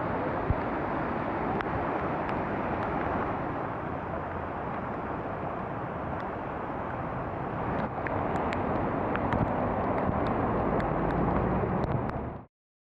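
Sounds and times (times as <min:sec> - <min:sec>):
river rushing in flood: 0:00.0 - 0:12.5.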